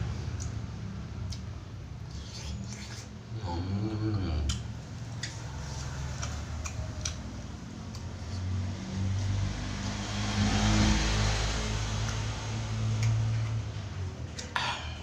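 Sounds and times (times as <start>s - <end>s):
person chewing food: 1.2s - 10.4s, 11.0s - 15.0s
mouth clicks: 2.4s - 5.4s.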